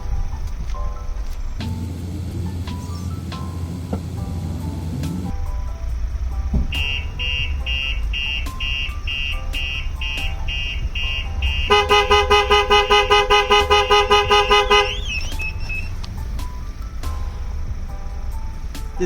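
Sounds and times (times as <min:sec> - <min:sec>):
vehicle alarm beeping: 0:05.3 - 0:18.4
van horn honking rapidly: 0:06.7 - 0:16.0
short alarm chirp: 0:14.3 - 0:16.0.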